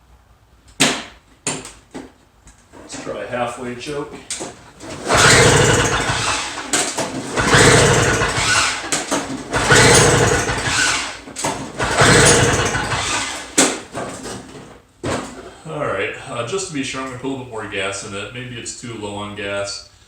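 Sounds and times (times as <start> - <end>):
recoil starter pulls: 2.6 - 15.5
engine turning over: 4.3 - 15.4.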